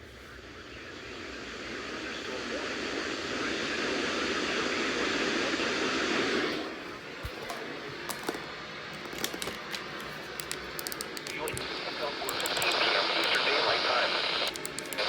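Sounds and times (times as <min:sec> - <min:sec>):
radio static hiss: 0:00.0 - 0:15.0
crackling clicks: 0:07.2 - 0:15.0.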